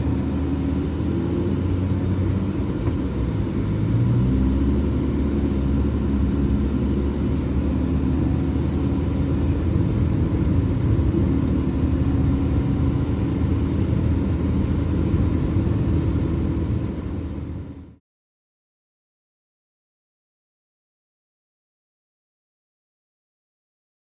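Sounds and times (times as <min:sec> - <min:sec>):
car engine humming: 0:00.0 - 0:18.0.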